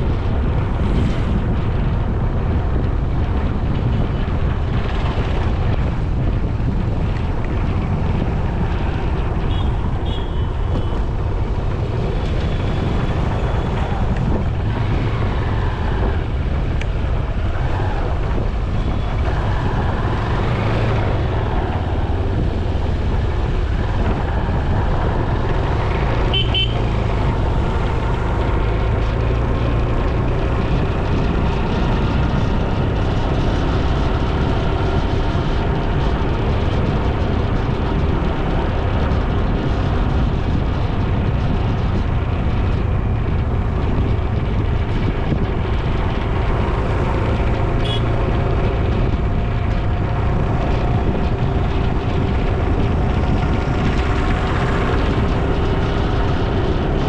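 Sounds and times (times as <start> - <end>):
motorcycle engine running: 0.0 - 57.0
wind rush: 0.0 - 57.0.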